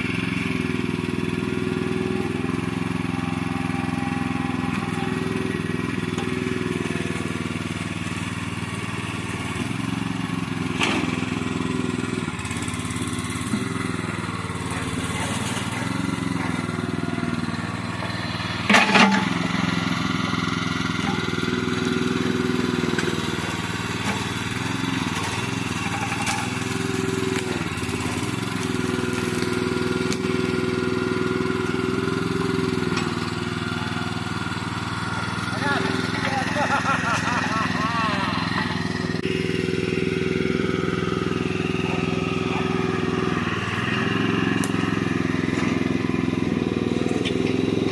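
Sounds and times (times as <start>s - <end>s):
small engine under load: 0.0s - 47.9s.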